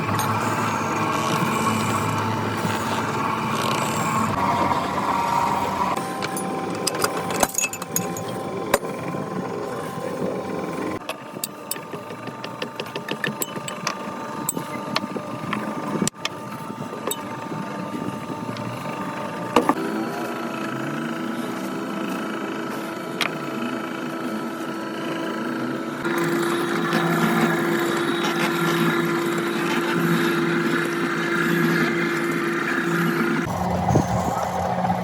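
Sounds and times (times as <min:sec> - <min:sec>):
machinery humming: 0:00.0 - 0:35.0
machinery clicking and knocking: 0:10.9 - 0:16.4.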